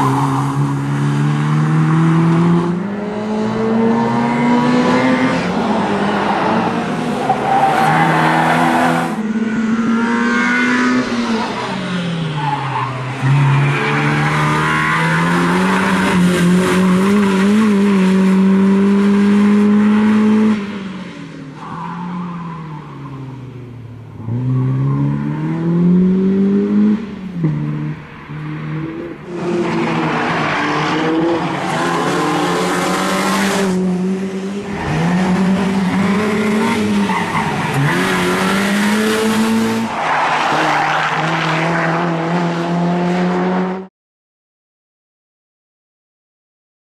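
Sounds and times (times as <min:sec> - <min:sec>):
car engine revving: 0:24.1 - 0:43.9.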